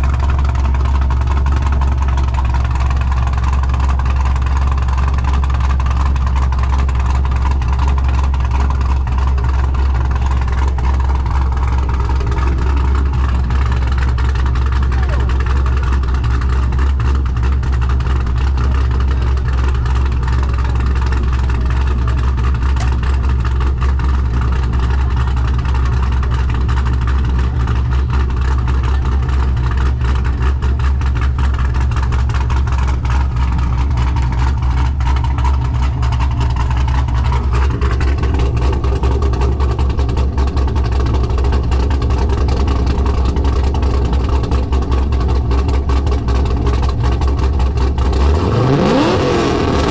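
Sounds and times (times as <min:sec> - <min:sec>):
car engine idling: 0:00.0 - 0:49.9.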